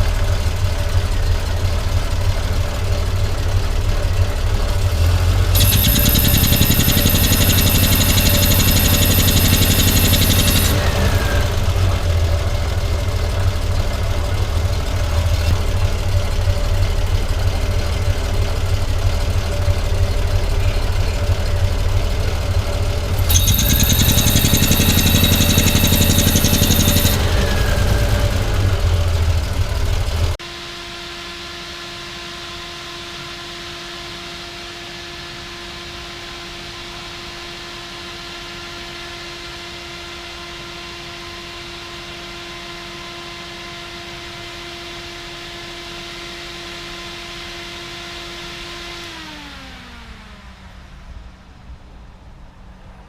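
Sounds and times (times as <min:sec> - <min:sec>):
car engine idling: 0:00.0 - 0:30.4.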